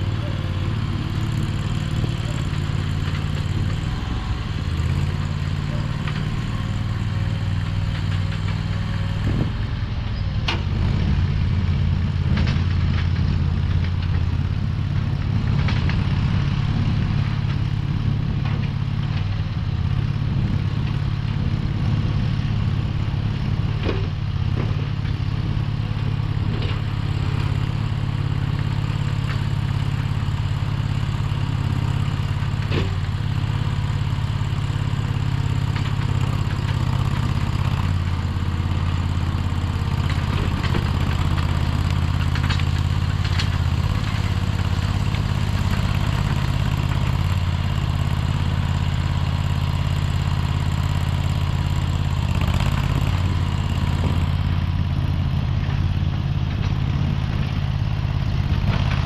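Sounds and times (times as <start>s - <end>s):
skid steer engine idling: 0.0s - 59.0s.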